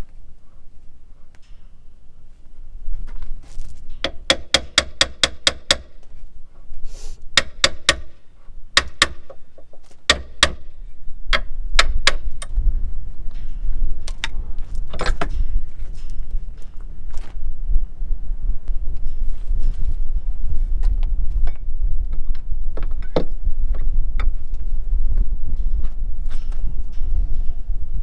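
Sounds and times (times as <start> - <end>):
low rumble: 10.6 - 28.0.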